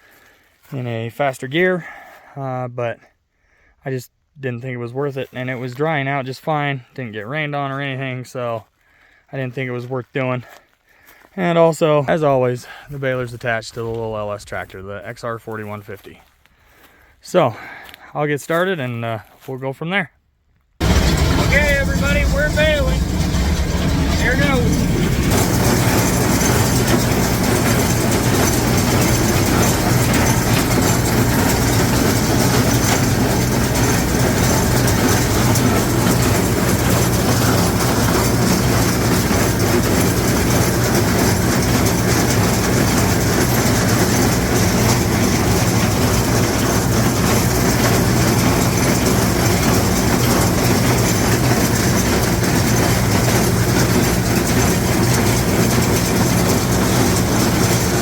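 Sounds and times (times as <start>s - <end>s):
hay baler machinery working: 20.8s - 58.0s
tractor diesel engine running: 20.8s - 58.0s.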